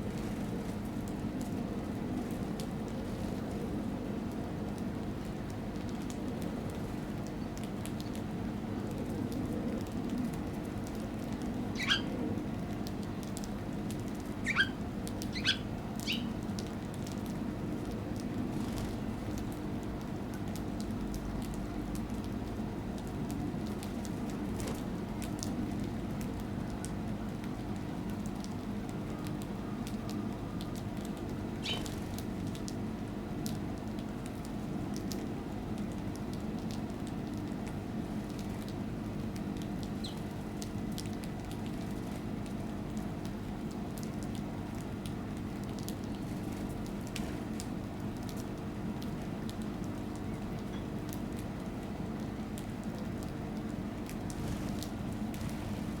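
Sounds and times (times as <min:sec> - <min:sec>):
birds ticking and tapping: 0:10.8 - 0:12.1, 0:12.8 - 0:17.4, 0:30.7 - 0:32.6, 0:39.4 - 0:41.8
bird calling: 0:11.8 - 0:12.1, 0:14.4 - 0:16.4, 0:31.6 - 0:31.9, 0:40.0 - 0:40.2
steady low hum: 0:54.0 - 0:56.0.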